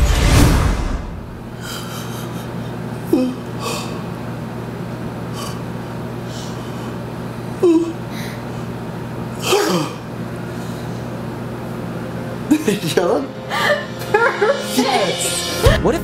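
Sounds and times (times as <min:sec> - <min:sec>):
steady low hum: 0:00.0 - 0:16.0
person breathing: 0:10.5 - 0:11.2.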